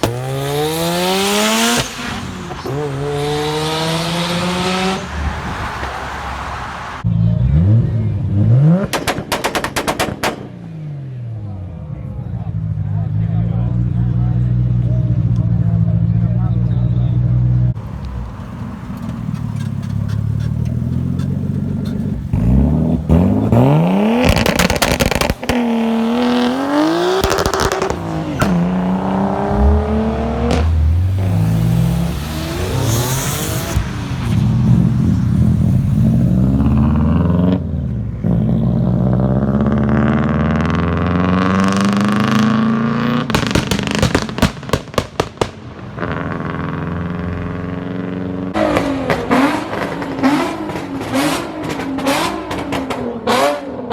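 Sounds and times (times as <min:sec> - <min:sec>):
car engines revving: 0:00.0 - 0:53.9
sharp cracks: 0:08.8 - 0:10.7, 0:23.5 - 0:35.0, 0:43.2 - 0:47.5.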